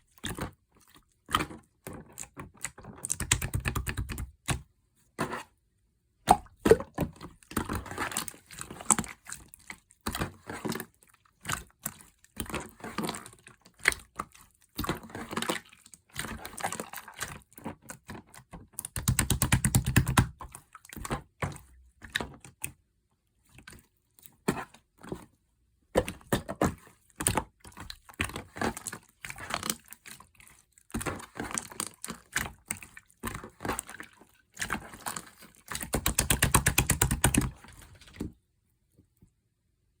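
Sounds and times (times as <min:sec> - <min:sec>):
keyboard typing: 0:35.9 - 0:37.5.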